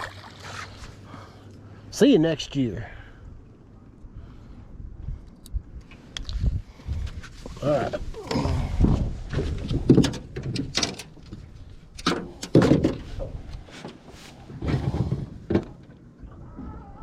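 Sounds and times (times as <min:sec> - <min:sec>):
gear knocking and thumping in boat: 0:08.3 - 0:11.4.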